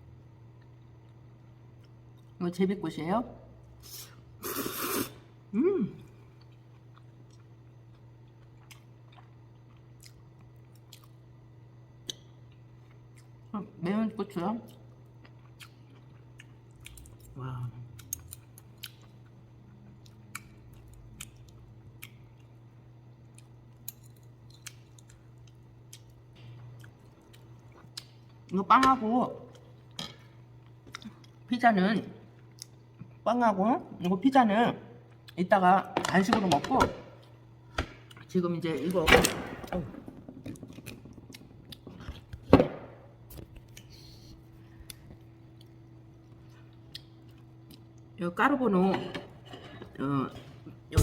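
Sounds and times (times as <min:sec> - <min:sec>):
low steady hum: 0:00.0 - 0:51.0
person chewing food: 0:06.3 - 0:11.2, 0:12.0 - 0:13.5, 0:14.7 - 0:22.6, 0:23.2 - 0:28.5, 0:40.5 - 0:42.4, 0:43.4 - 0:48.1.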